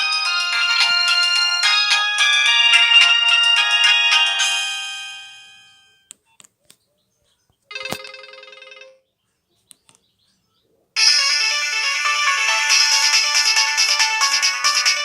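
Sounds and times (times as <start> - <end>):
chime-like phone ringtone: 0.0 - 6.1, 7.7 - 9.1, 11.0 - 15.0.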